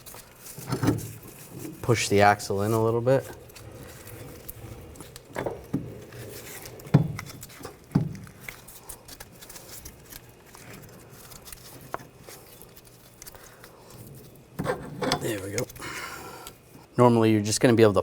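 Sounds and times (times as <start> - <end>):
metal knocks and clunks: 4.8 - 6.2, 6.8 - 8.2.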